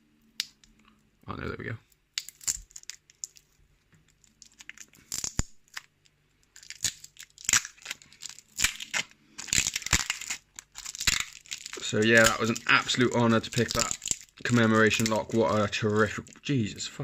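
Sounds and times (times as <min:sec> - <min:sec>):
wrapping being torn off: 0:02.2 - 0:16.5.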